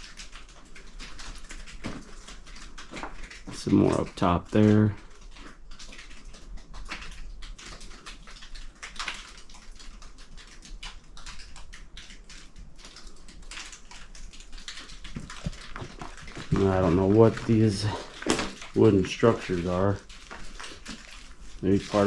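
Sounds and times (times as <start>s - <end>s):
footsteps crunching on loose ground: 15.1s - 22.0s.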